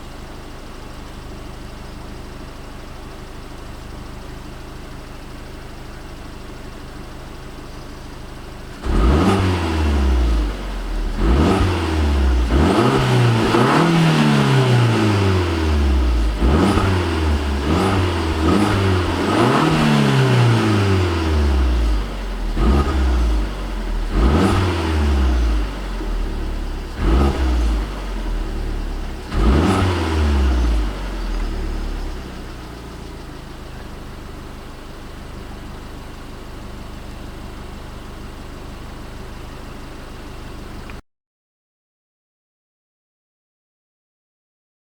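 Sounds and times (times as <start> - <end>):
car engine idling: 0.0 - 41.0
car engine revving: 8.7 - 41.0.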